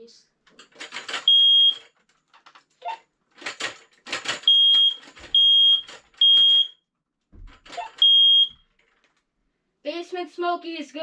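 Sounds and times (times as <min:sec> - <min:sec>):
smoke alarm beeps: 0:01.3 - 0:01.8, 0:04.5 - 0:06.8, 0:07.8 - 0:08.6.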